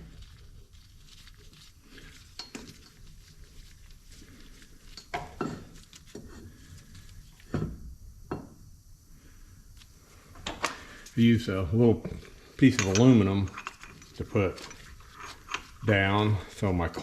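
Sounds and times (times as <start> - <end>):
metal clanks and clinks: 12.6 - 15.7.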